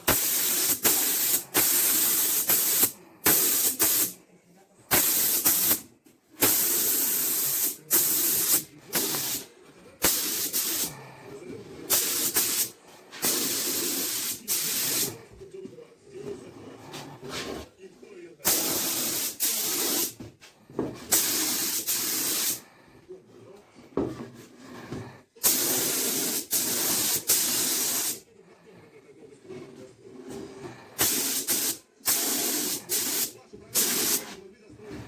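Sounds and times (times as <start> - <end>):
spray paint hissing bursts: 0.1 - 4.2, 4.9 - 5.8, 6.4 - 9.4, 10.0 - 10.9, 11.9 - 15.1, 18.5 - 20.2, 21.1 - 22.6, 25.4 - 28.2, 31.0 - 34.2.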